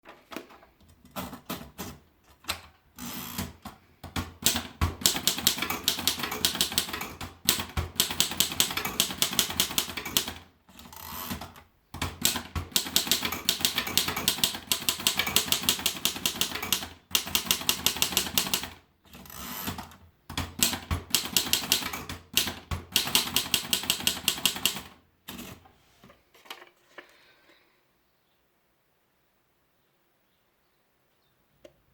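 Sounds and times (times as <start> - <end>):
typewriter keystroke clacks: 1.1 - 10.5, 11.2 - 18.8, 19.5 - 25.6.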